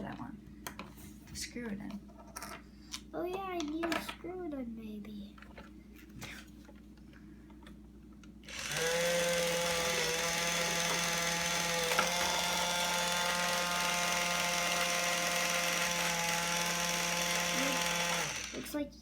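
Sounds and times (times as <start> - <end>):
toy drill whirring: 8.5 - 18.8.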